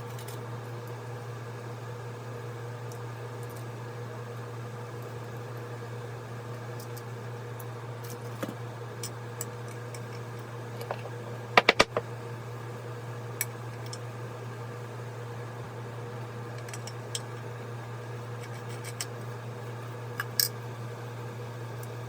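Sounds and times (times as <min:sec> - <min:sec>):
steady fan hum: 0:00.0 - 0:22.0
sharp metallic taps: 0:11.6 - 0:12.0.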